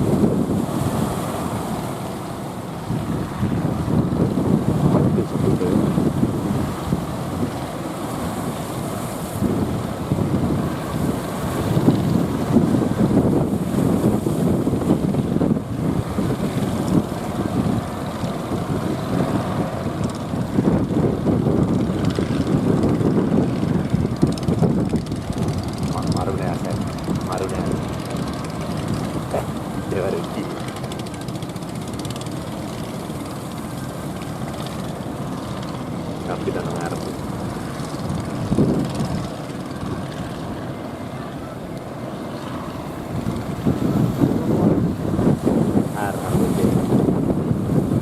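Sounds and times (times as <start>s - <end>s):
boat engine droning: 0.0s - 48.0s
surf: 0.0s - 48.0s
wind: 0.0s - 48.0s.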